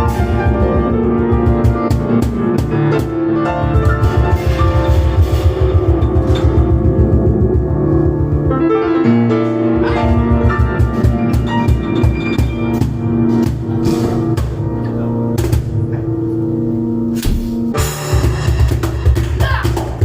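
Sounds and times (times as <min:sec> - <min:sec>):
piano notes and chords: 0:00.0 - 0:20.0
cajon percussion beat: 0:18.0 - 0:20.0.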